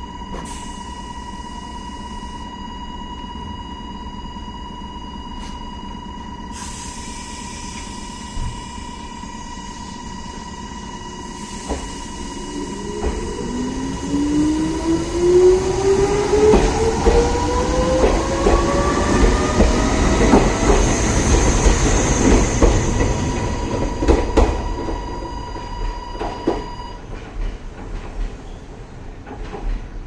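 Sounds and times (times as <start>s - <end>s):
train motor whine rising: 0.0s - 26.9s.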